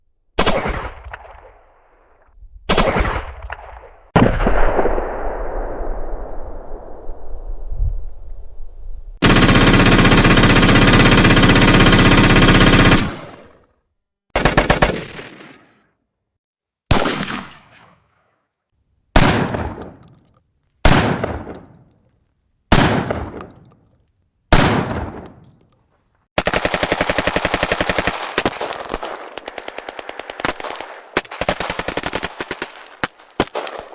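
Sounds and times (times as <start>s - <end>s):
gunshots with echoing tails: 0.4s - 8.3s, 9.2s - 13.6s, 14.4s - 15.9s, 16.9s - 18.3s, 19.2s - 20.3s, 20.9s - 21.9s, 22.7s - 23.8s, 24.5s - 25.6s
automatic machine-gun fire: 9.2s - 13.5s, 14.4s - 15.3s, 26.4s - 28.6s.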